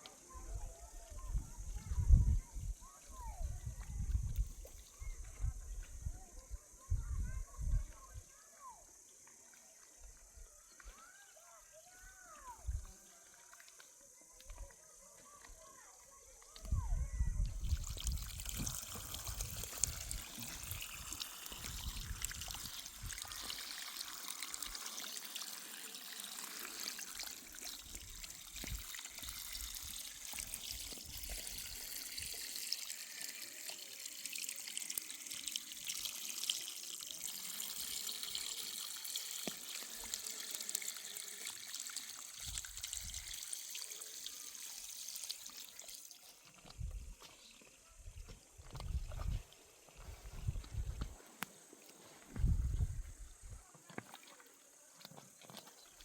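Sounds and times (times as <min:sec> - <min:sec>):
water running and splashing: 0:17.5 - 0:47.8, 0:48.6 - 0:56.0.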